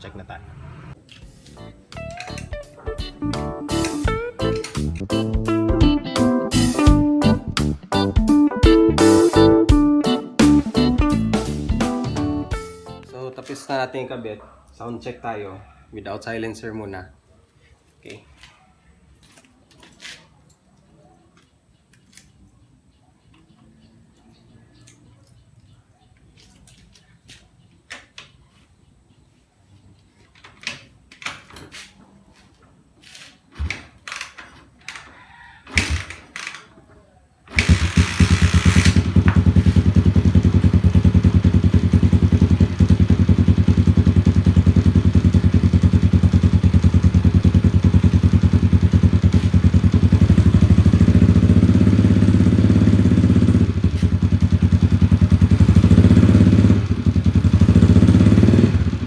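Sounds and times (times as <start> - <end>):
motorcycle engine idling: 37.5 - 59.0.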